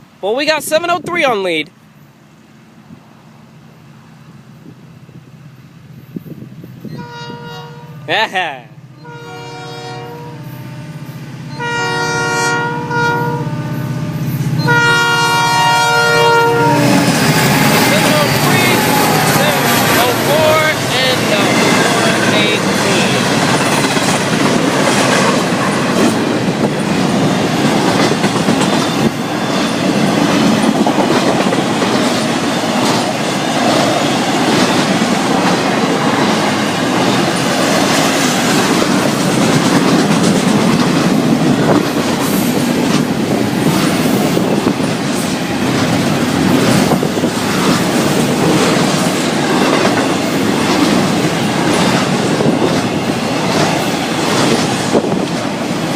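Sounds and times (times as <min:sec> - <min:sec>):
train wheels rumbling on rails: 0:13.3 - 0:55.9
clickety-clack of wheel clicks: 0:39.3 - 0:41.2.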